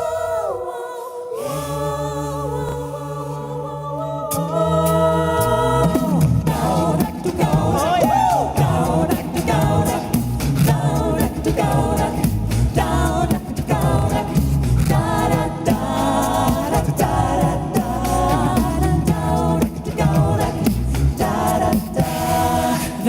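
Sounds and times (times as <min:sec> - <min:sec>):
a cappella group singing in harmony: 0:00.0 - 0:23.0
low vocal bass line: 0:01.4 - 0:23.0
rhythmic percussive clicks: 0:05.9 - 0:22.9.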